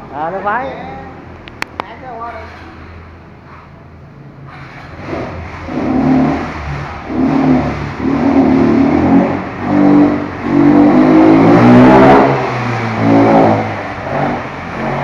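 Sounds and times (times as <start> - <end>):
motorcycle engine revving: 4.5 - 15.0.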